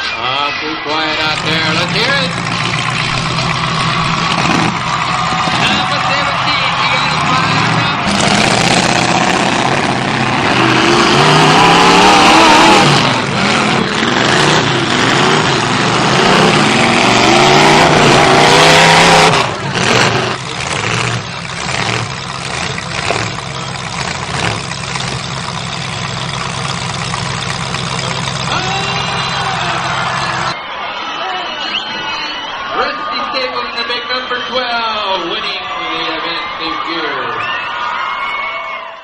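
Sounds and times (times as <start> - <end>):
car engines revving: 0.0 - 30.6.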